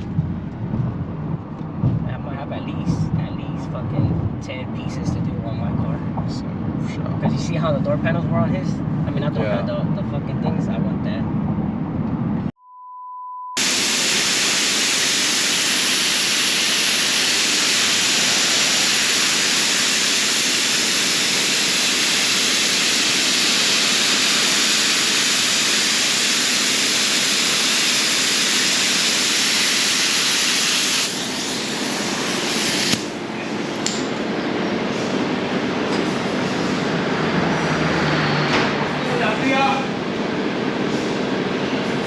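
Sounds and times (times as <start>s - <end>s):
short beep: 12.6s - 13.6s
loud steady hiss: 13.6s - 35.5s.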